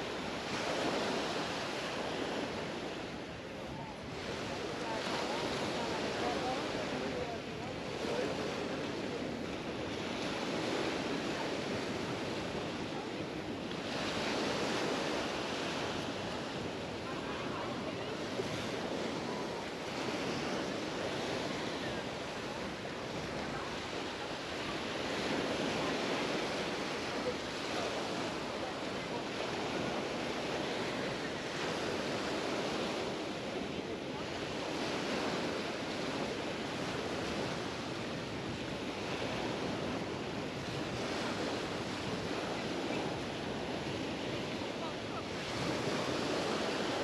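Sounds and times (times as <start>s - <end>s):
surf washing onto beach: 0.0s - 47.0s.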